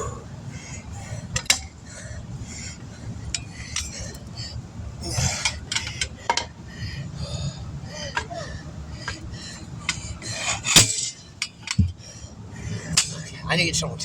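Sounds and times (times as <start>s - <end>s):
tire tools clinking on wheel rim: 1.4s - 1.8s, 3.2s - 4.5s, 5.1s - 6.6s, 9.0s - 12.0s, 12.8s - 13.5s.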